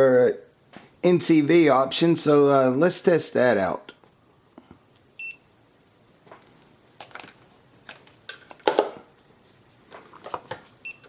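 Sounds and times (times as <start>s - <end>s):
multimeter beep: 5.2s - 5.5s.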